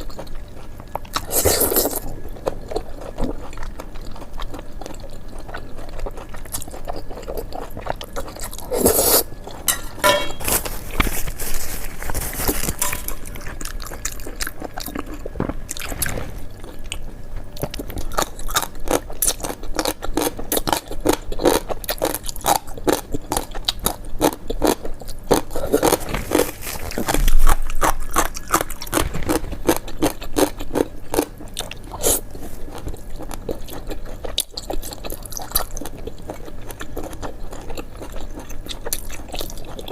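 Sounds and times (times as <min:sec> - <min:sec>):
crunching and chewing crisp food: 0:00.0 - 0:39.9
scraping sounds: 0:08.8 - 0:13.6, 0:15.8 - 0:16.5, 0:25.6 - 0:27.7.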